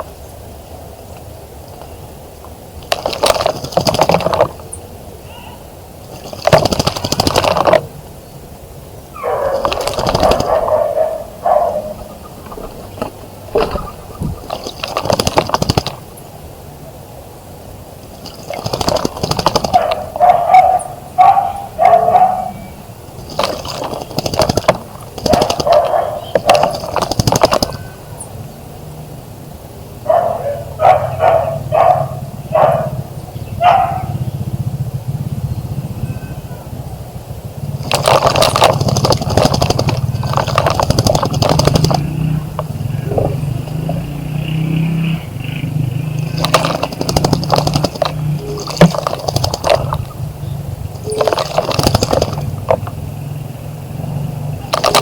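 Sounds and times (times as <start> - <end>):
water splashing in bird bath: 2.8 - 4.7, 6.0 - 8.0, 9.5 - 16.2, 18.0 - 21.0, 23.0 - 27.8, 37.7 - 45.1, 46.0 - 53.0, 54.6 - 55.0
low engine hum: 9.2 - 55.0.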